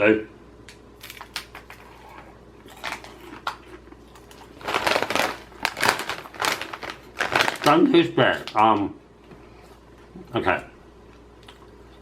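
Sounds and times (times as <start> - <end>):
popcorn being eaten: 1.0 - 7.8
plastic snack bag crinkling: 1.0 - 8.8.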